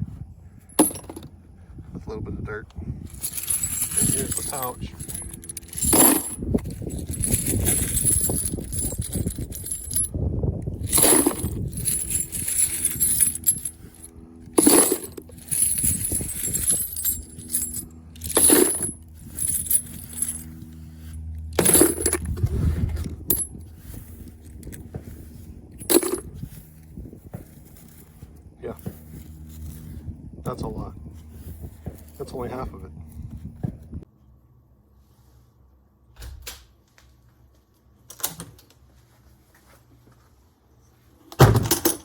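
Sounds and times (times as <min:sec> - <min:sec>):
brass casings clinking: 0:03.1 - 0:10.1, 0:10.8 - 0:22.3, 0:25.8 - 0:26.3
rustling handling noise: 0:03.1 - 0:10.1, 0:10.7 - 0:30.0.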